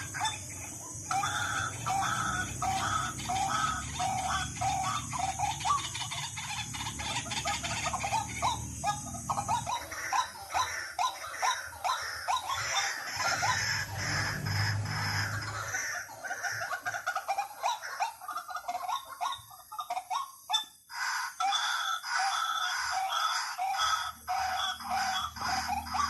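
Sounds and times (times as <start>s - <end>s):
waterhen calling: 0.0s - 26.0s.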